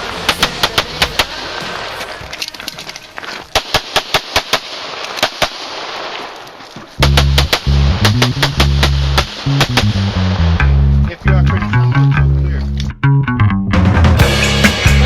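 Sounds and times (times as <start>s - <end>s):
rapid pistol fire: 0.3s - 1.6s, 3.5s - 6.2s, 7.0s - 10.4s.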